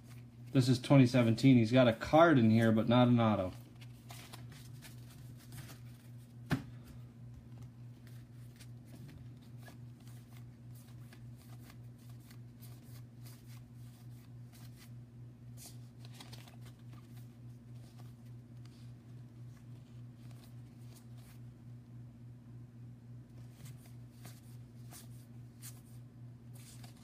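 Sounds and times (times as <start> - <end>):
steady low hum: 0.0 - 27.0
cards flicking and scraping: 3.4 - 6.7, 7.4 - 14.9, 15.5 - 21.4, 23.4 - 27.0.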